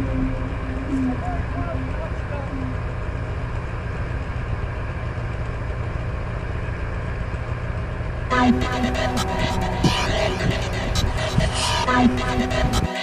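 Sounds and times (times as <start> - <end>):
snowmobile engine rumbling: 8.1 - 13.0
music: 8.3 - 13.0.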